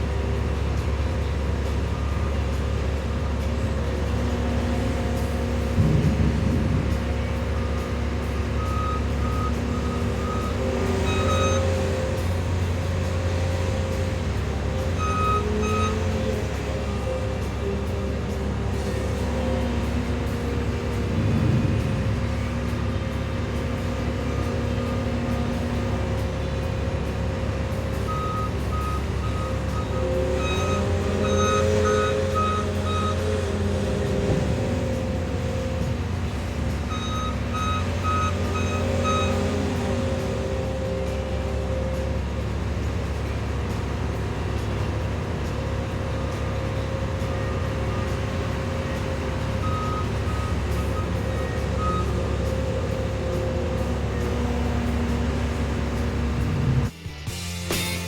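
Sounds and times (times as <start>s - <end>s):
heavy equipment diesel engine: 0.0s - 58.0s
backup alarm beeping: 5.7s - 12.3s, 15.0s - 17.1s, 28.0s - 33.4s, 34.3s - 42.1s, 47.4s - 56.0s.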